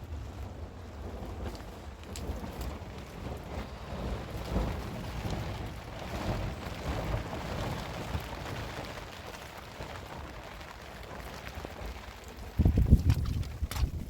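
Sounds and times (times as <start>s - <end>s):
wind on microphone: 11.0s - 14.0s.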